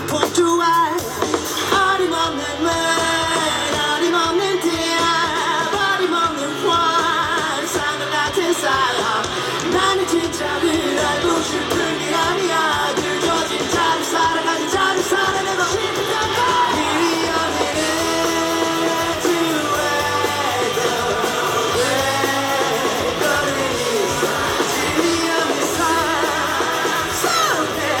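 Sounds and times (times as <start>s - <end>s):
live band music: 0.0s - 28.0s
man singing: 0.0s - 28.0s.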